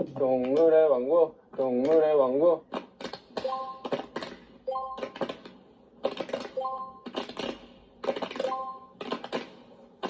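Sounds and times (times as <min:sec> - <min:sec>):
electronic chime: 0:03.5 - 0:03.9, 0:04.7 - 0:05.1, 0:06.6 - 0:07.0.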